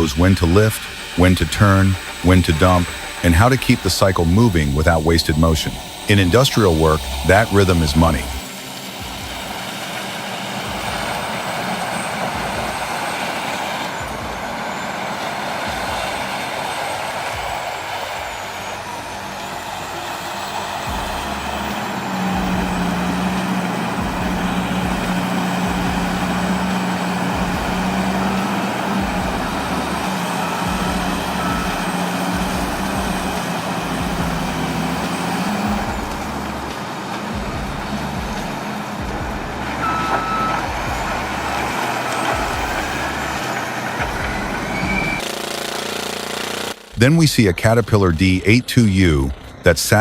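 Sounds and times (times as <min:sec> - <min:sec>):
diesel engine working under load: 0:00.0 - 0:50.0
reversing alarm beeps: 0:22.3 - 0:45.2.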